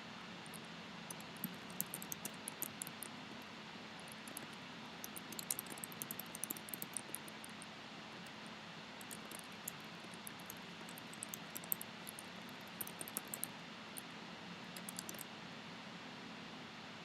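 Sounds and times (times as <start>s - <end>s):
faint steady hiss: 0.0s - 17.0s
computer keyboard typing: 0.4s - 7.6s, 9.0s - 14.1s, 14.7s - 15.3s.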